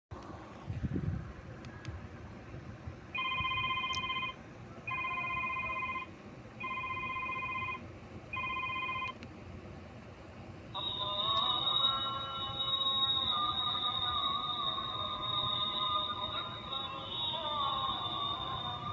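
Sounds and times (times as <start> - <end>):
trilling phone ringtone: 3.2 - 9.1, 10.8 - 18.9.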